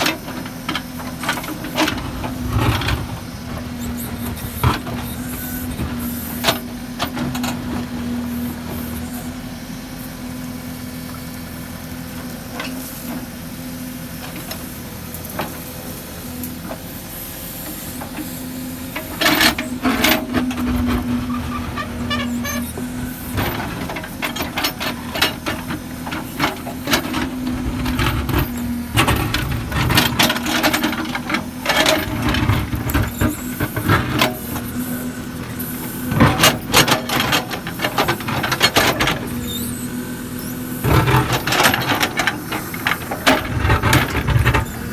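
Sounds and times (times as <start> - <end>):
diesel engine running: 0.0 - 44.9.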